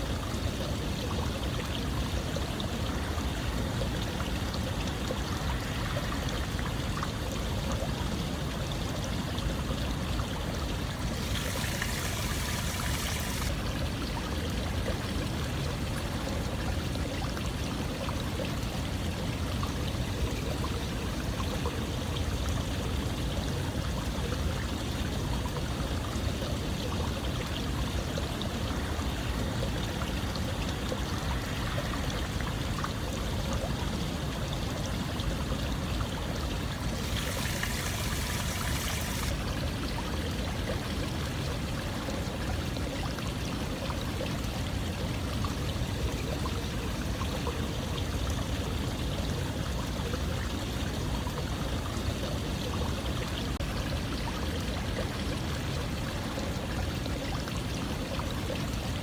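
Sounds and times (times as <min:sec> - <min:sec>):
running water flowing: 0:00.0 - 0:22.6, 0:34.3 - 0:47.2.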